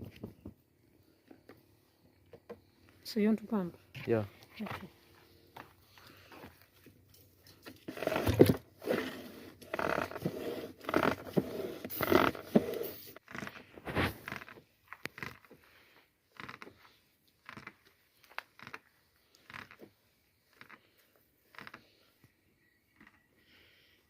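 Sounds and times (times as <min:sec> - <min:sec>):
hand pump strokes: 0:07.8 - 0:15.6.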